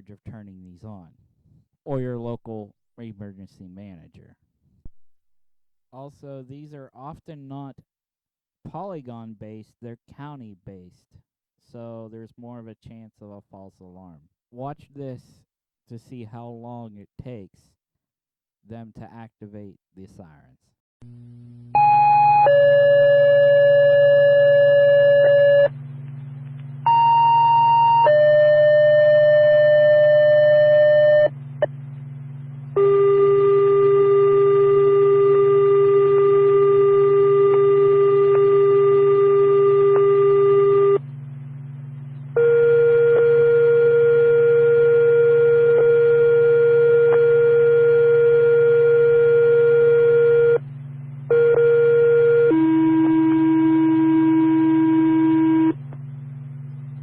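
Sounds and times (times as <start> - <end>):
low radio hum: 1.9 - 2.7, 21.0 - 42.6, 52.4 - 57.0
long steady alert tones: 21.8 - 25.8, 26.8 - 31.7, 32.8 - 41.0, 51.3 - 55.8.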